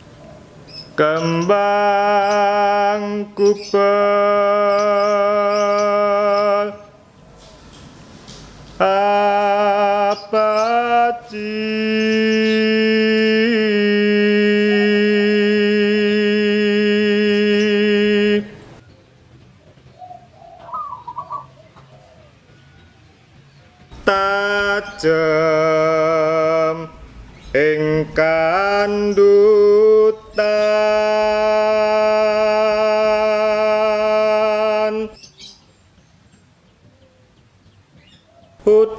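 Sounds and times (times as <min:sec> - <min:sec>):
man singing unaccompanied chant: 0:00.7 - 0:07.1, 0:08.8 - 0:18.8, 0:23.8 - 0:35.4, 0:38.6 - 0:38.9.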